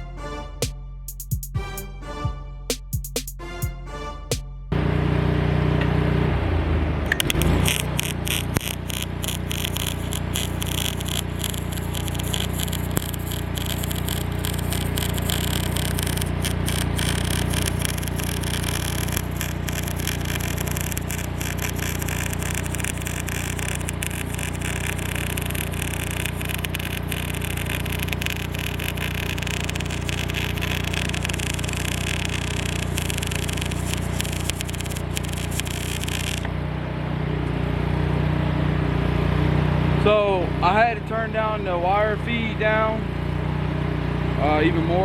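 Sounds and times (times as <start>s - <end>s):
generator humming: 4.7s - 45.0s
welding arc crackling: 7.1s - 36.5s.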